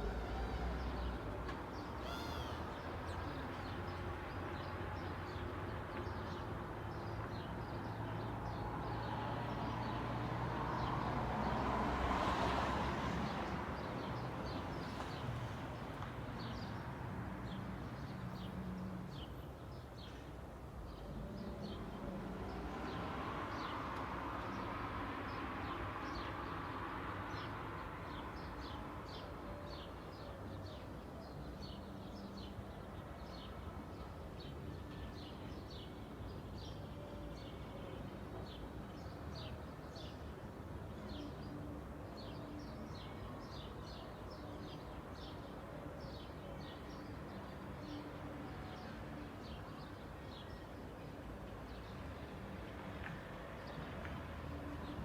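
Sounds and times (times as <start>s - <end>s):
small birds chirping: 0.0s - 4.5s.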